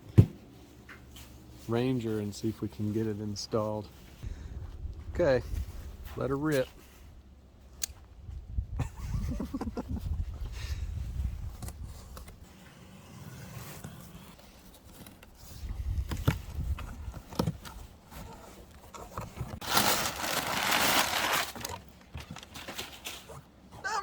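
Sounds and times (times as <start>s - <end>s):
cardboard scraping: 11.6s - 23.5s
packaging crinkling: 19.6s - 23.2s
cardboard tearing: 19.6s - 23.4s.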